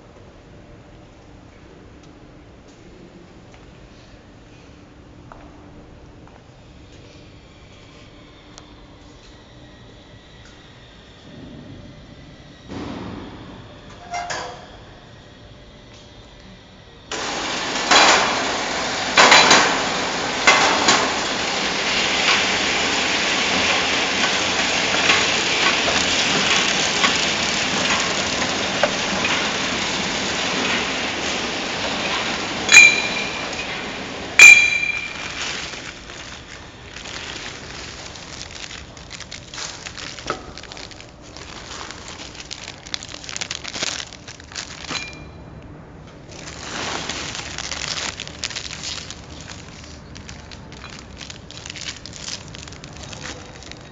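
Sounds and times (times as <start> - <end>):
packing machine rushing noise: 17.1 - 45.3, 46.2 - 53.9
loud ringing metal clangs: 17.9 - 37.6.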